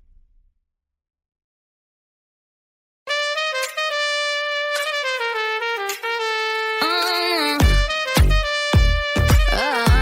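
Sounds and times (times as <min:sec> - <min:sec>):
brass music: 0:03.1 - 0:10.0.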